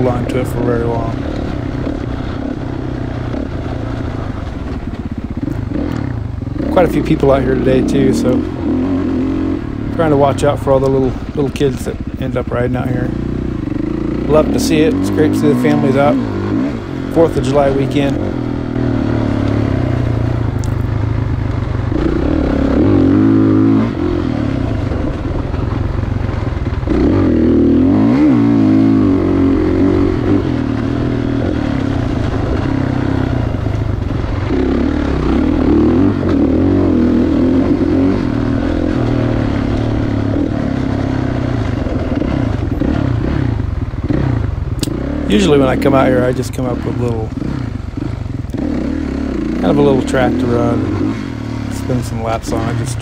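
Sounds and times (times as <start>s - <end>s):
dirt bike engine revving: 0.0s - 53.0s.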